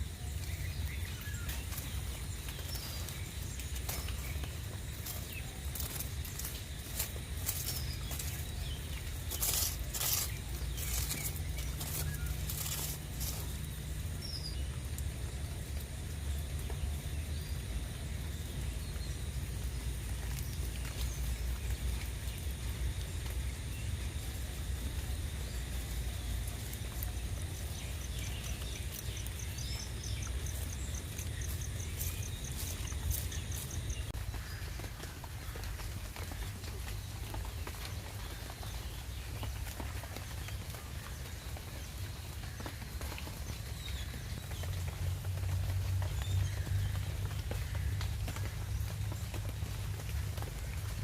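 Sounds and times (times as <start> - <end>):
rain falling: 0.0 - 51.0.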